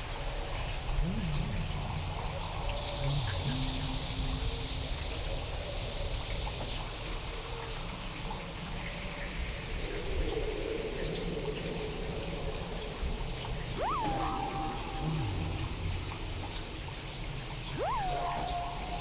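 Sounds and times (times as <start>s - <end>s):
continuous low rumble: 0.6s - 7.0s, 10.1s - 19.0s
steady rain falling: 0.7s - 19.0s
faint pitched tones: 13.6s - 19.0s.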